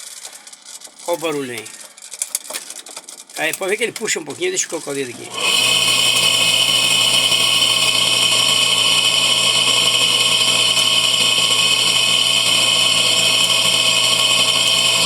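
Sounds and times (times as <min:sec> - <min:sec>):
washing machine humming and whining: 0:03.4 - 0:15.0.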